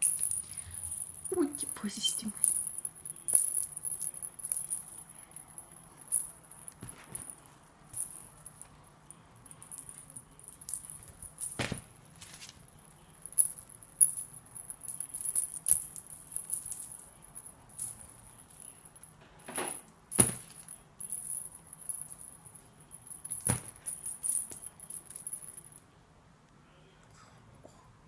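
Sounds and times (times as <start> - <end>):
cat toy jingling: 0.0 - 8.7, 20.2 - 25.8.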